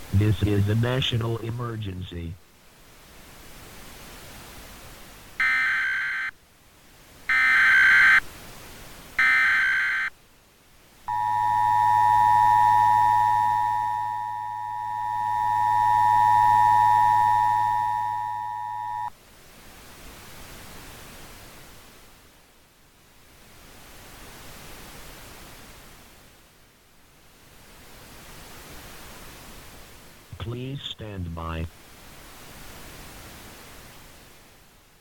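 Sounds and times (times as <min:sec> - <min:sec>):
radio hiss: 0:00.0 - 0:02.4, 0:30.3 - 0:31.7
data tone bursts: 0:11.1 - 0:19.1
low hum: 0:11.1 - 0:19.1
two-tone attention signal: 0:11.1 - 0:19.1.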